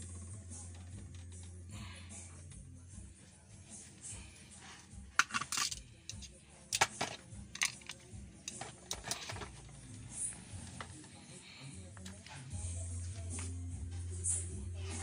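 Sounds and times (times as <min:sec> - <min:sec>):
hand tools clicking and clinking: 0:05.2 - 0:09.8.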